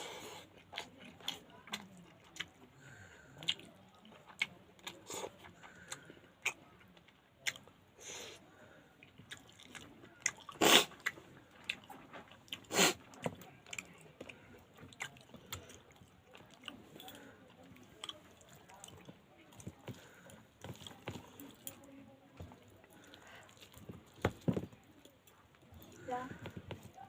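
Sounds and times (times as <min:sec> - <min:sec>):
chewing mouth clicks and smacks: 0:03.4 - 0:07.7, 0:09.0 - 0:21.9.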